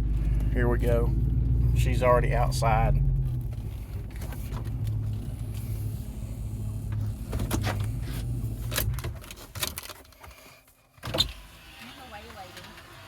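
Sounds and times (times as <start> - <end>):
vehicle engine idling: 0.0 - 9.2.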